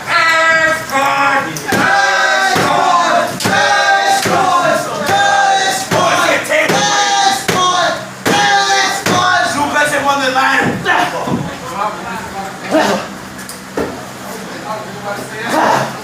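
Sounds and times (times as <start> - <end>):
group chanting: 0.0 - 9.7.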